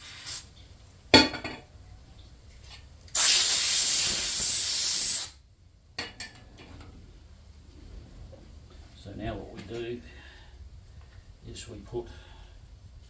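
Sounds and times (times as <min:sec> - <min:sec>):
aerosol spray hissing: 0:00.0 - 0:00.5, 0:03.2 - 0:05.4.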